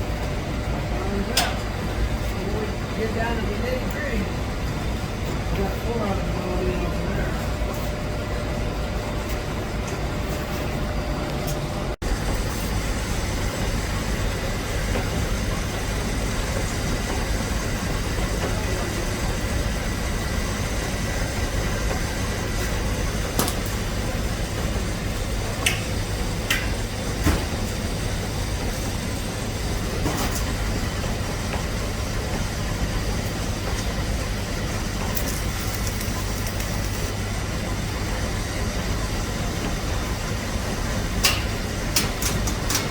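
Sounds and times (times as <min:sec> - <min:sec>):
low mechanical hum: 0:00.0 - 0:42.9.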